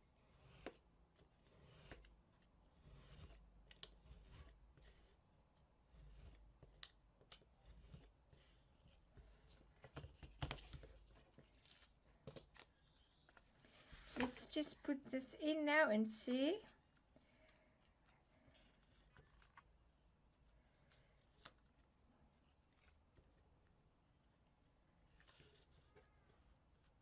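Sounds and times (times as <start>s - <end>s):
paper rustling and scraping: 7.6s - 14.6s.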